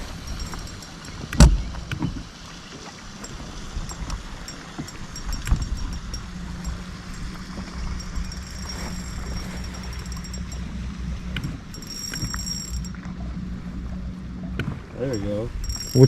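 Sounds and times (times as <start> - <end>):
wind and water rumble: 0.0 - 16.0.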